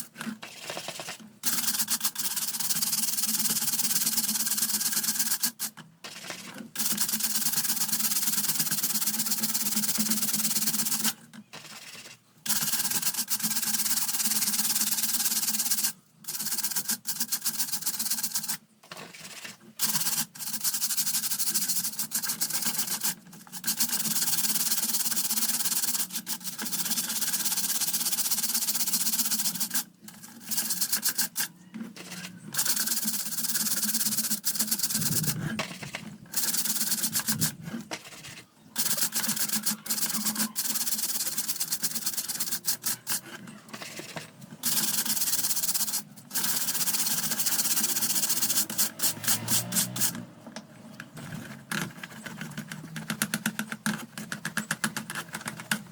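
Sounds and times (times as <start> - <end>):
scrubbing fan parts: 19.1 - 55.9.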